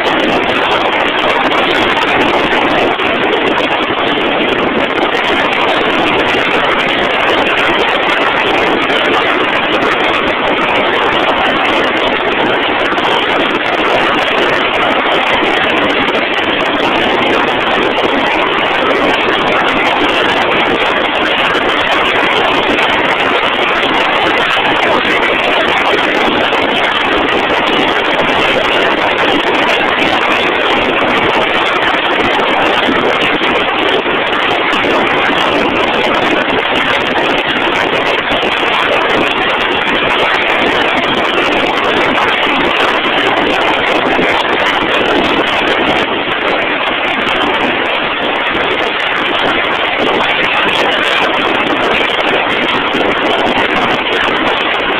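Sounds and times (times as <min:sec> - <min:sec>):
drill rig machinery roar: 0:00.0 - 0:54.9.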